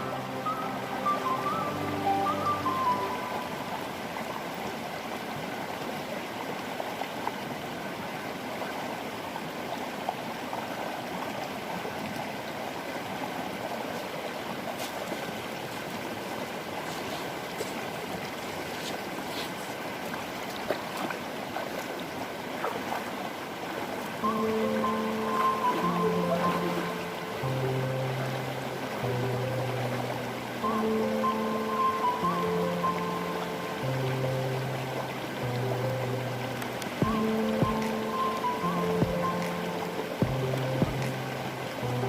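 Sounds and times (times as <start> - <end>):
stream rushing: 0.0 - 42.0
faint clicks: 36.6 - 37.0.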